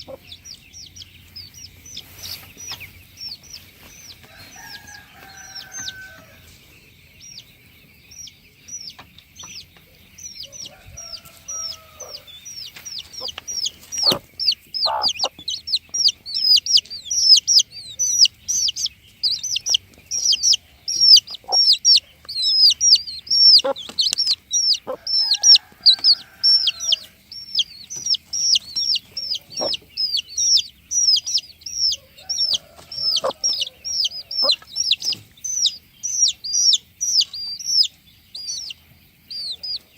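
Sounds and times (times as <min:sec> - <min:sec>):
chickens clucking: 0:00.0 - 0:39.9
rapid high chirping: 0:00.0 - 0:39.9
lower fowl calls: 0:04.2 - 0:06.5, 0:09.9 - 0:38.7.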